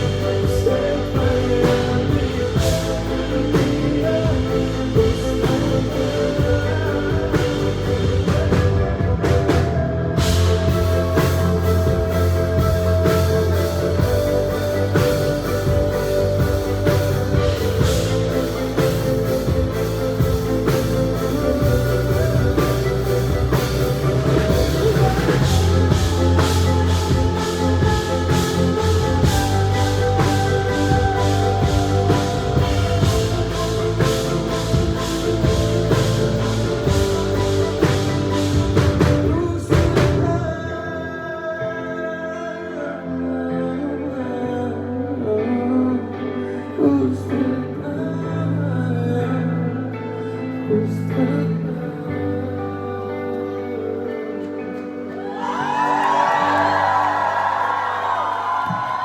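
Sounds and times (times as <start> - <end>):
bass: 0.0 - 59.0
drum beat: 10.3 - 40.2.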